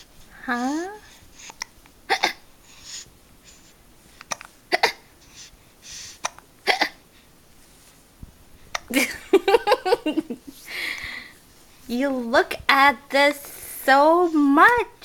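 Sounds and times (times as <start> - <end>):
baby hiccuping: 1.5 - 2.4, 4.3 - 5.1, 6.2 - 7.0.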